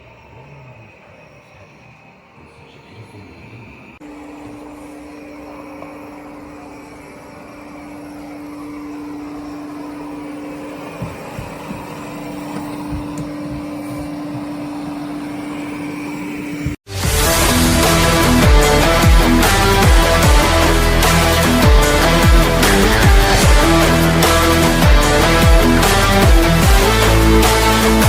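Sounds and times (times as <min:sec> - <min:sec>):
robot vacuum motor hum: 0:00.0 - 0:16.8
vacuum suction whirring: 0:00.0 - 0:28.0
faint low knocks: 0:10.8 - 0:15.0.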